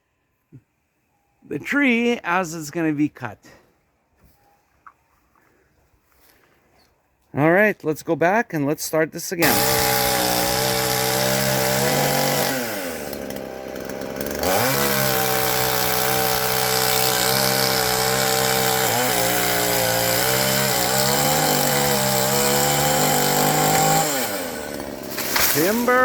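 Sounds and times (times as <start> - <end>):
chainsaw cutting tree trunk: 9.4 - 26.0.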